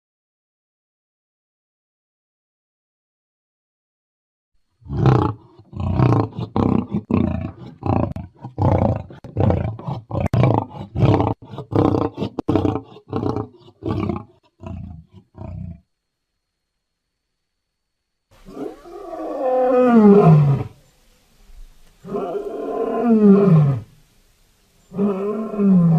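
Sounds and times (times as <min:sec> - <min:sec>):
lion roaring: 0:04.8 - 0:15.8, 0:18.4 - 0:20.8, 0:22.0 - 0:23.9, 0:24.9 - 0:25.9.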